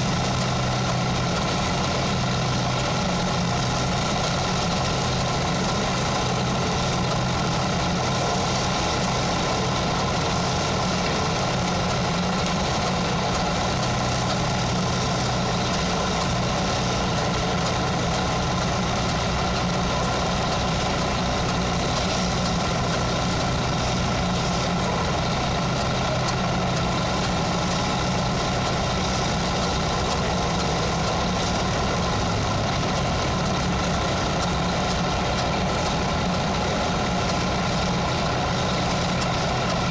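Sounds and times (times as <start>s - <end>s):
engine idling: 0.0s - 39.9s.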